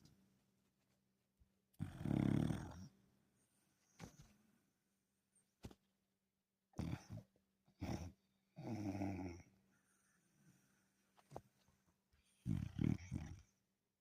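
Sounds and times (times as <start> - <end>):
dog snoring: 1.8 - 2.9, 6.8 - 10.2, 12.2 - 13.6.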